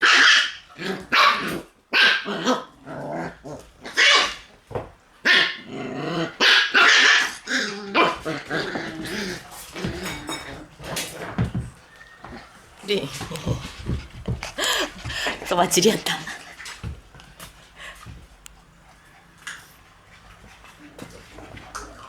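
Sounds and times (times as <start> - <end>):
puppies growling: 0.0 - 22.0
puppies yapping and yelping: 6.4 - 10.5.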